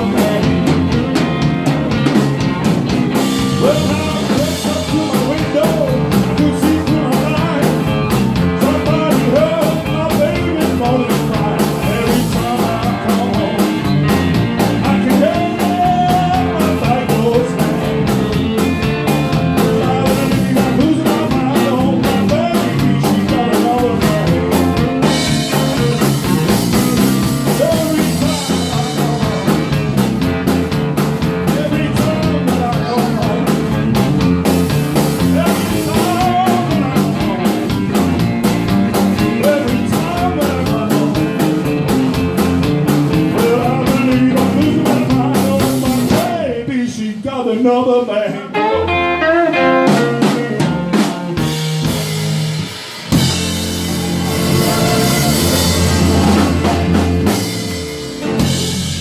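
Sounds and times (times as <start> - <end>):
person singing: 0.0 - 1.8, 3.2 - 30.2, 31.3 - 41.8, 43.1 - 52.1, 53.1 - 58.8
blues-rock band playing live: 0.0 - 46.7, 48.5 - 59.0.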